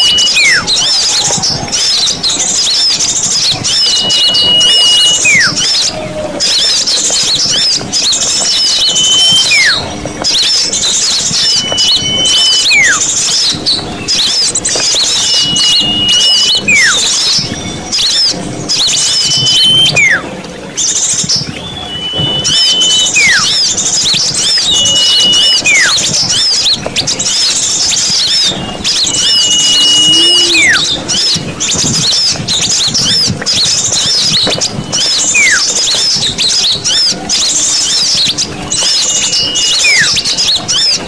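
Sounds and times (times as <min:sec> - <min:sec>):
steady high whistle: 0:00.0 - 0:02.0, 0:03.6 - 0:05.8, 0:08.5 - 0:09.8, 0:11.0 - 0:13.1, 0:14.2 - 0:18.1, 0:18.9 - 0:20.3, 0:21.6 - 0:26.7, 0:27.3 - 0:31.4, 0:34.9 - 0:35.8, 0:38.9 - 0:40.8
falling whistle: 0:00.0 - 0:07.8, 0:08.4 - 0:20.3, 0:21.6 - 0:33.3, 0:34.0 - 0:37.1, 0:38.8 - 0:41.0
small songbirds chirping: 0:00.0 - 0:41.0.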